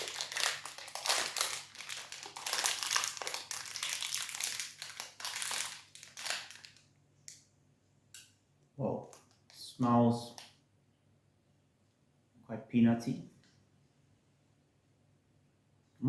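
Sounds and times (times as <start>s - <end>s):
plastic wrapper crinkling: 0.0s - 7.4s.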